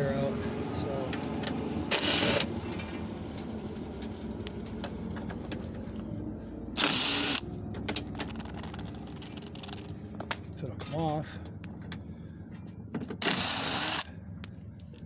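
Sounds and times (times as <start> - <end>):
cordless drill spinning: 1.9 - 2.6, 6.8 - 7.5, 13.2 - 14.1
light clicks and handling noise: 14.4 - 15.0.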